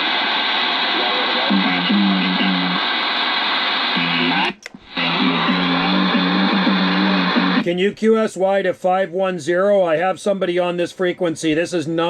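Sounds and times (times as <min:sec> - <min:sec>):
radio receiver hiss: 0:00.0 - 0:07.9
music over radio: 0:00.1 - 0:07.7
radio transmission clicks: 0:00.4 - 0:07.7.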